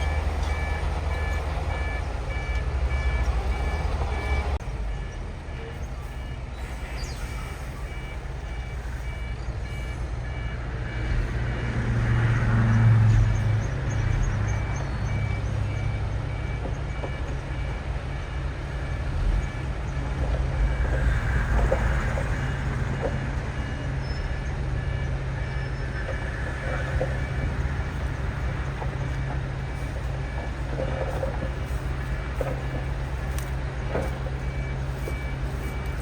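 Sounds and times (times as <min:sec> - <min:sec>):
faint repeating beep: 0:00.0 - 0:11.1, 0:20.7 - 0:36.0
heavy diesel machinery running: 0:00.0 - 0:36.0
metallic clanks and squeaks: 0:18.8 - 0:36.0.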